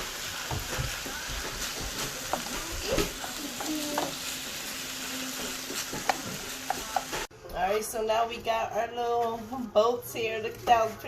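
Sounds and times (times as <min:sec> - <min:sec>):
food sizzling in a frying pan: 0:00.0 - 0:07.3.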